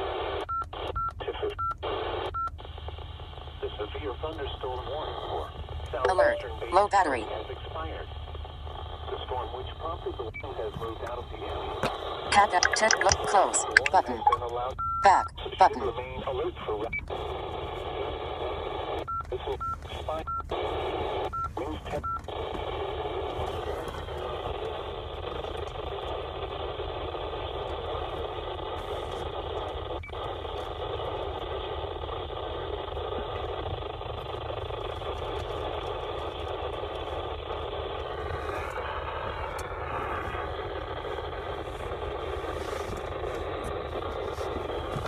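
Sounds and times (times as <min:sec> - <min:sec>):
radio static hiss: 0:02.9 - 0:45.0
faint radio broadcast: 0:03.6 - 0:08.1, 0:08.8 - 0:25.4, 0:30.8 - 0:33.7.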